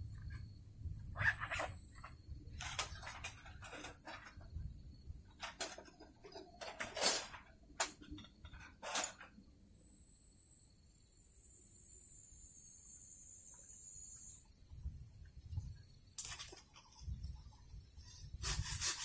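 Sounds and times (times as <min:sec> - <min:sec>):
faint high whine: 0:00.0 - 0:18.9
metal cooking gear clinking: 0:05.2 - 0:09.3.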